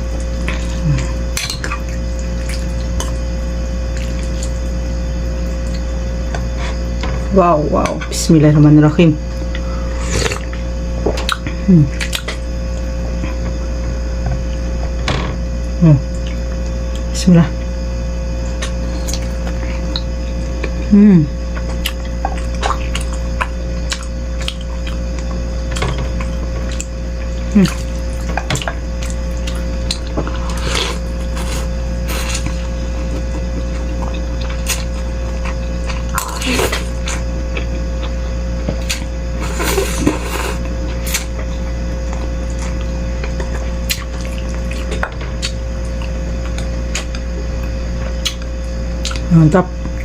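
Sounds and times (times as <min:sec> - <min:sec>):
low electrical hum: 0:00.0 - 0:50.0
slurping broth: 0:39.4 - 0:41.2.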